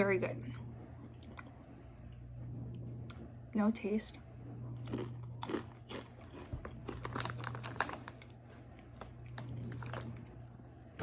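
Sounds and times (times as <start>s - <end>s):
crunching dried noodles: 4.8s - 11.0s.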